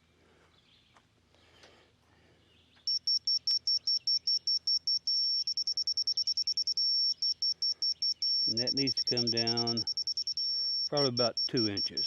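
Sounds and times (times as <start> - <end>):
high-pitched electronic beeping: 2.9 - 12.0.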